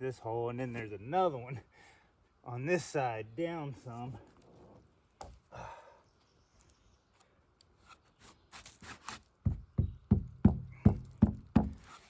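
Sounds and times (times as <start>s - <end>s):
knocking on wooden board: 9.4s - 11.8s.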